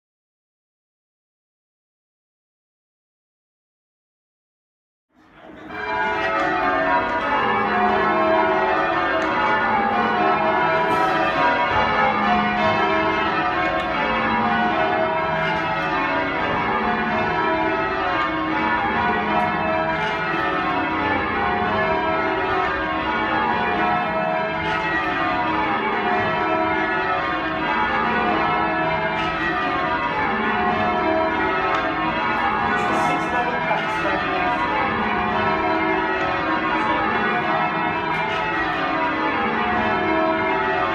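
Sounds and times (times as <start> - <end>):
church bells change ringing: 5.2 - 40.9.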